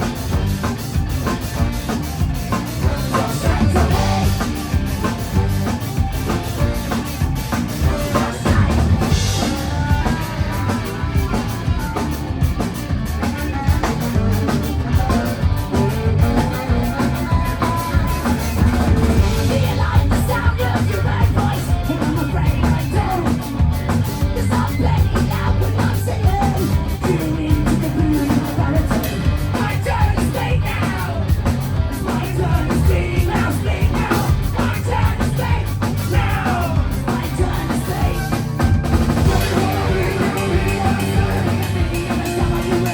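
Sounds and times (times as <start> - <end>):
drum kit: 0.0 - 42.9
live rock band playing: 0.0 - 42.9
person singing: 2.7 - 5.1, 7.8 - 11.9, 14.9 - 23.6, 24.2 - 31.3, 31.9 - 38.5, 39.2 - 42.9.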